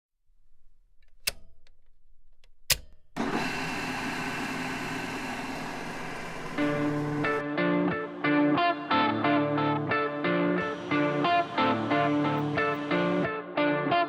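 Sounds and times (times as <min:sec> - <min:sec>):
sharp clicks: 0:01.0 - 0:03.1
machine whirring: 0:03.2 - 0:07.4.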